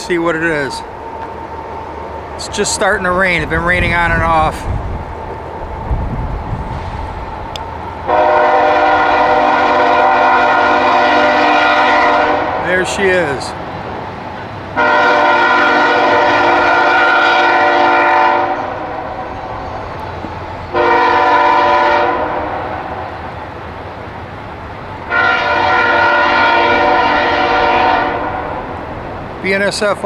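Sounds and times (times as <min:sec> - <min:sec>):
locomotive air horn blasts: 0:08.1 - 0:13.4, 0:14.8 - 0:19.6, 0:20.7 - 0:23.3, 0:25.1 - 0:28.7.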